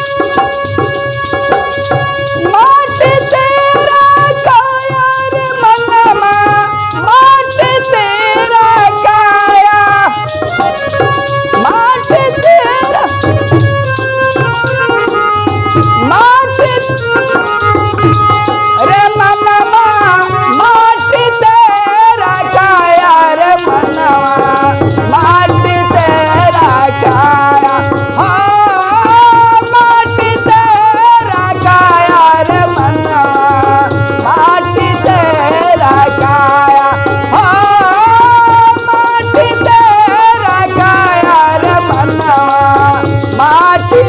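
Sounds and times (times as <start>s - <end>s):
devotional song melody: 0.0s - 44.0s
steady drum beat: 4.8s - 44.0s.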